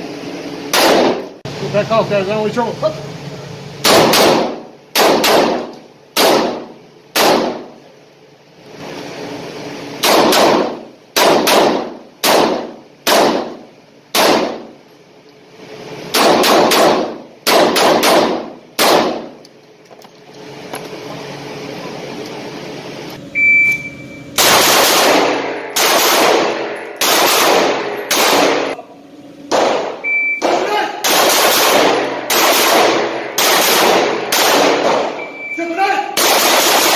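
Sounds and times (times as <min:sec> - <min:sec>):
pistol shots: 0:00.7 - 0:01.3, 0:03.8 - 0:07.8, 0:10.0 - 0:14.8, 0:16.1 - 0:19.4, 0:24.4 - 0:28.8, 0:29.5 - 0:35.3, 0:36.2 - 0:36.9
short high beep: 0:23.3 - 0:24.4, 0:30.0 - 0:30.4, 0:35.2 - 0:35.7.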